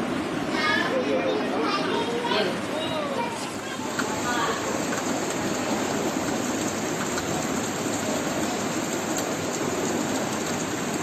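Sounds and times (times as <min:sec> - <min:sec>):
heavy rain pouring: 0:00.0 - 0:11.0.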